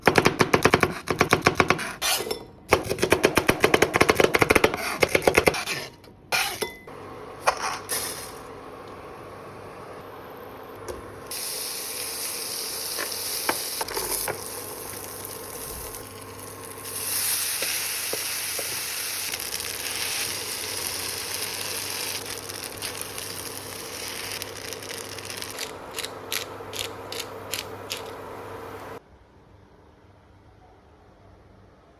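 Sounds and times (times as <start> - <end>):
food sizzling in a pan: 7.0 - 29.0.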